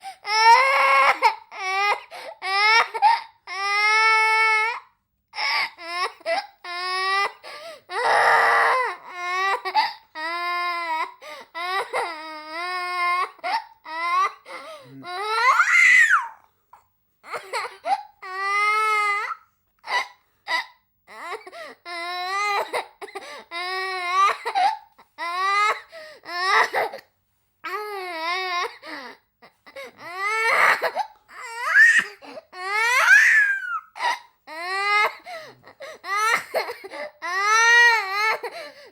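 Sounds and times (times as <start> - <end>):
sobbing gasps: 2.0 - 2.4, 7.4 - 7.9, 14.4 - 15.1, 21.4 - 21.8, 23.1 - 23.5, 25.8 - 27.0, 35.0 - 37.2, 38.3 - 38.9.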